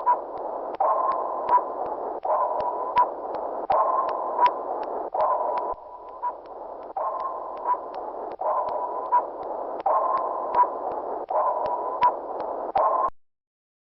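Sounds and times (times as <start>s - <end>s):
sharp clicks: 0.0s - 13.1s
sonar pings: 3.7s - 12.2s.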